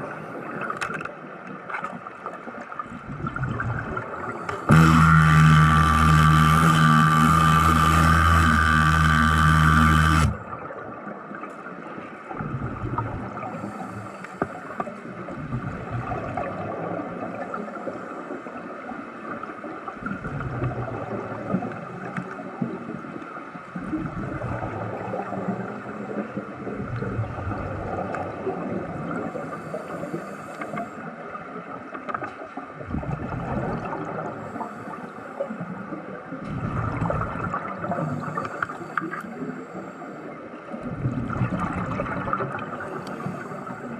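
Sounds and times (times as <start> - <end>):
low water surges: 0.0 - 43.9
underwater bubbling and gurgling: 0.0 - 43.9.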